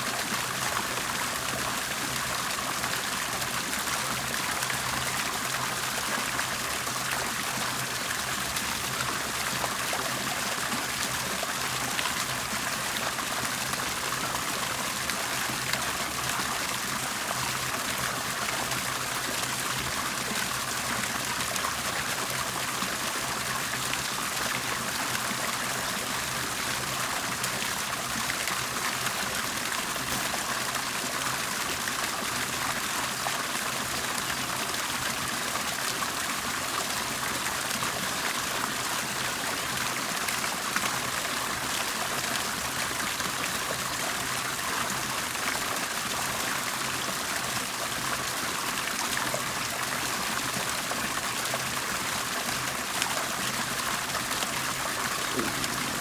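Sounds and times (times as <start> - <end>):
water bubbling and trickling: 45.9 - 56.0.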